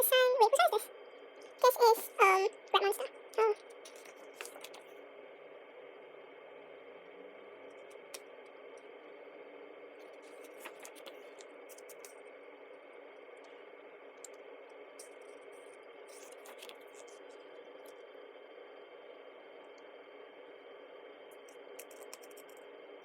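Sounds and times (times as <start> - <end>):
paper pages turning: 3.9 - 4.8, 10.2 - 12.1, 16.1 - 17.2.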